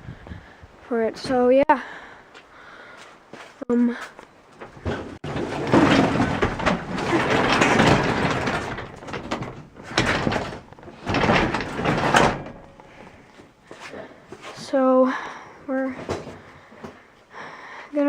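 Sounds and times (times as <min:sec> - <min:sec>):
garage door rolling on tracks: 0:04.8 - 0:13.1.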